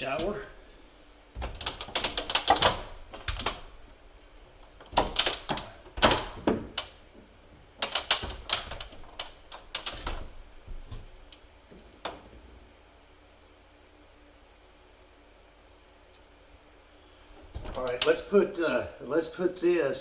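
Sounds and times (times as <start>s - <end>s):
thread tape clicking and crackling: 1.4s - 7.1s, 7.8s - 10.4s, 17.7s - 18.2s.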